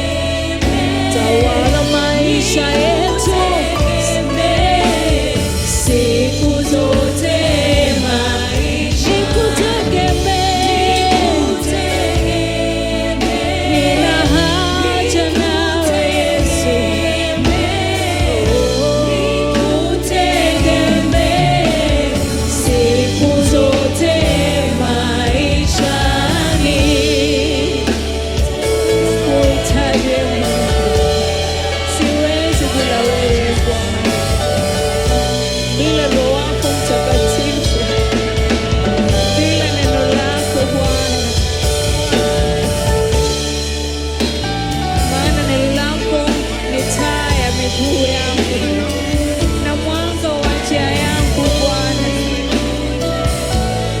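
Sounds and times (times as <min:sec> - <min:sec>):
band accompaniment: 0:00.0 - 0:54.0
choir singing: 0:00.0 - 0:54.0.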